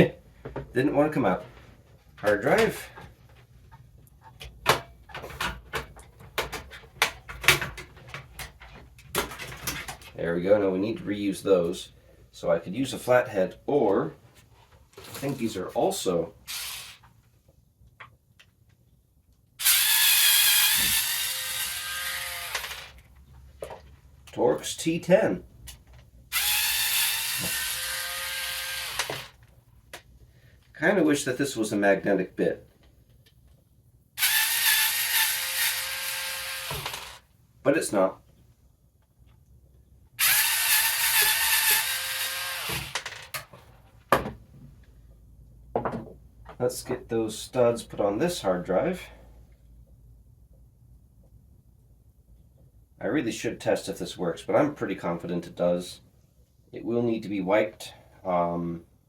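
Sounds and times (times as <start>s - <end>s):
power screwdriver whine: 16.5s - 17.0s, 19.6s - 23.0s, 26.3s - 29.4s, 34.2s - 37.2s, 40.2s - 43.1s.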